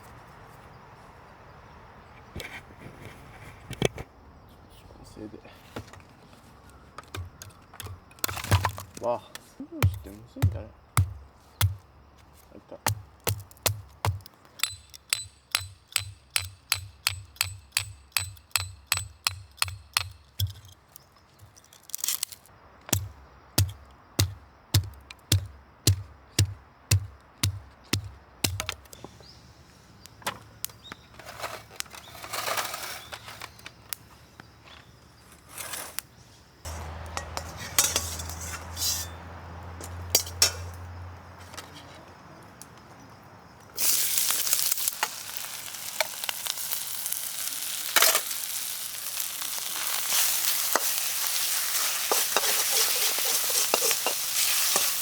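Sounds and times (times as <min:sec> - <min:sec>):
food frying in a wok: 0:43.8 - 0:55.0.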